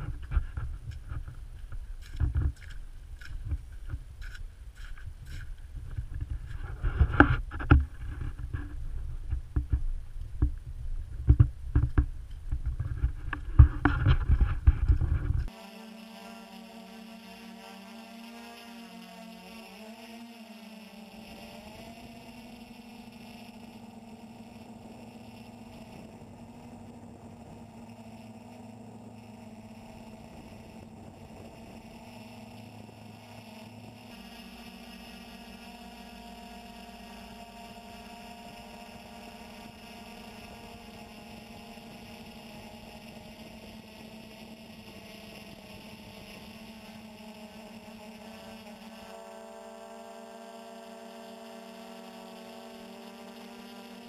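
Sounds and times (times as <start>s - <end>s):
quadcopter propellers buzzing: 0.0s - 54.0s.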